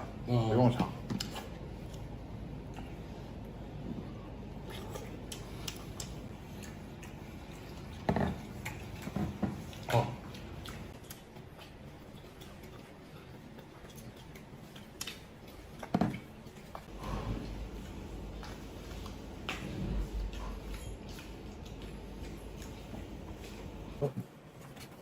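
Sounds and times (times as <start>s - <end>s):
chewing: 0.0s - 25.0s
low rumble: 16.9s - 20.9s.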